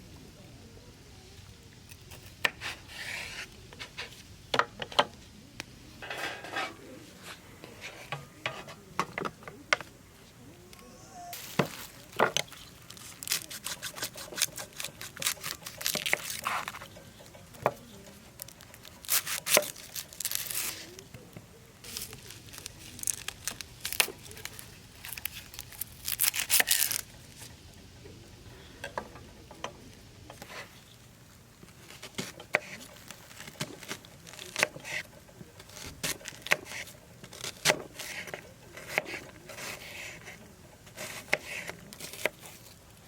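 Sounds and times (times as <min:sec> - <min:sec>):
small objects clinking and rustling: 0:11.4 - 0:20.9, 0:21.8 - 0:27.5.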